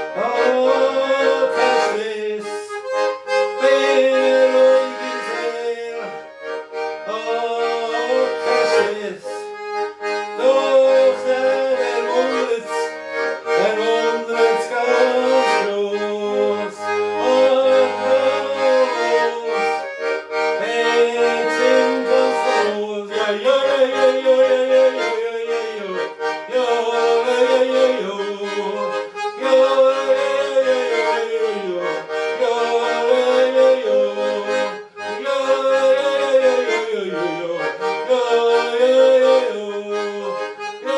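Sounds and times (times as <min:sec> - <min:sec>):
button accordion folk tune: 0:00.0 - 0:40.9.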